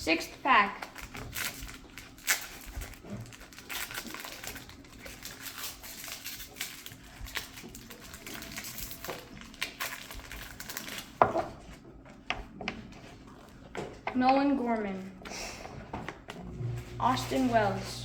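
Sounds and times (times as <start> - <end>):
wrapper rustling and crinkling: 0.3 - 12.1.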